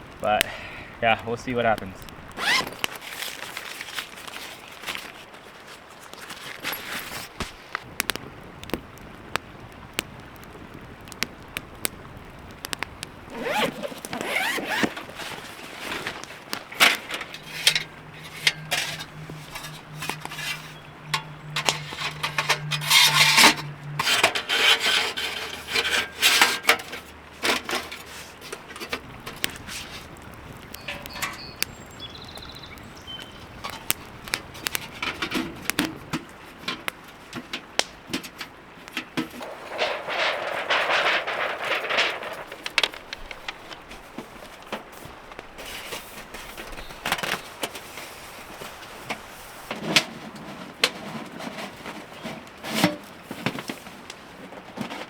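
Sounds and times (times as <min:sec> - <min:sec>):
low steady hum: 0:07.4 - 0:36.1
scraping and rubbing: 0:13.3 - 0:31.4, 0:39.4 - 0:43.6.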